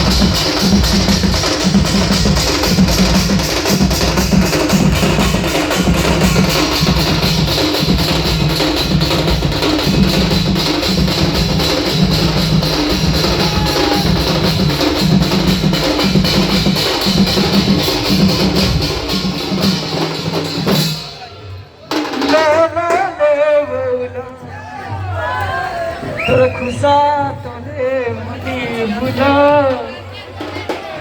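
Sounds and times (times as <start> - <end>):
drum and percussion music: 0.0 - 31.0.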